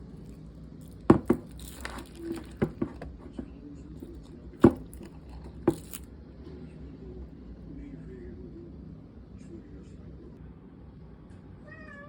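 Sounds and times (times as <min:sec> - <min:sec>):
objects knocking and clicking: 0:00.2 - 0:06.1.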